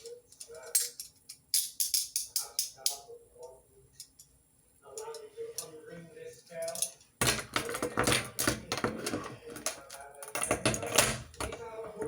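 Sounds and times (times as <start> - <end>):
handcuffs clicking and rattling: 0.3 - 3.0.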